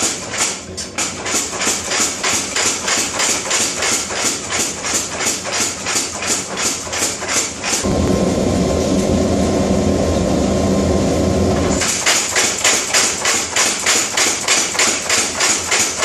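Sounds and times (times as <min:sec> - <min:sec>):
machine running hum: 0:07.8 - 0:12.0
power hammer striking hot steel: 0:11.5 - 0:16.0.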